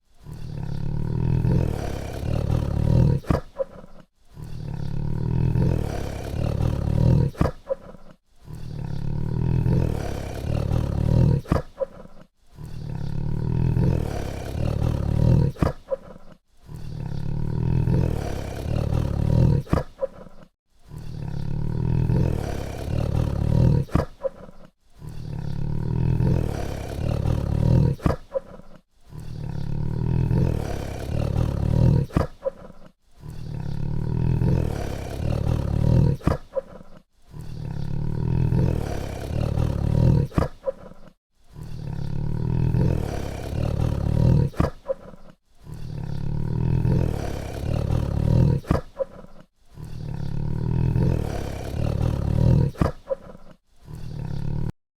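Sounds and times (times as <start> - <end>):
tiger roaring: 0.2 - 54.8.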